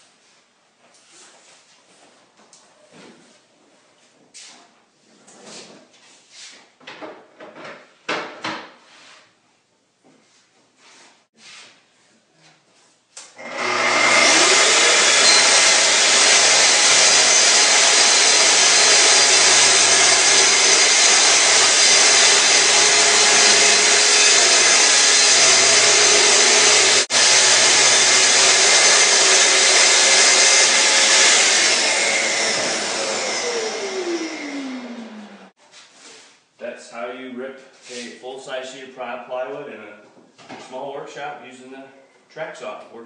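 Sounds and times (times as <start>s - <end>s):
track saw cutting plywood: 13.4s - 35.4s.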